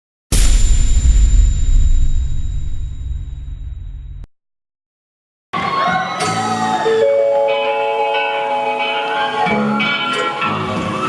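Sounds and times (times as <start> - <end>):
loud explosion boom: 0.3 - 4.3.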